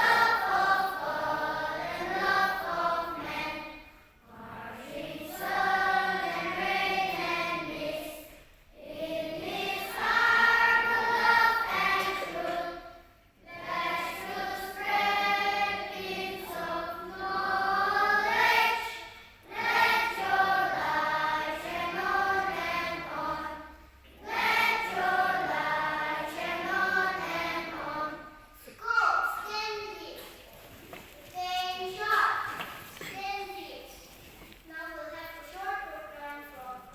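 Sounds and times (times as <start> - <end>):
group of voices singing: 0.0 - 28.4.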